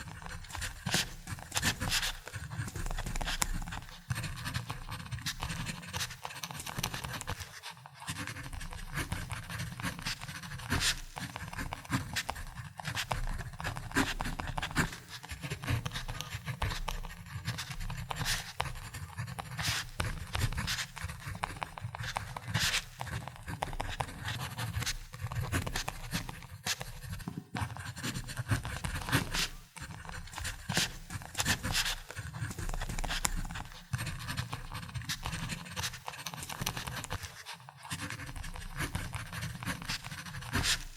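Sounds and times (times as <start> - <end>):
ballpoint pen writing on paper: 0.0 - 40.9.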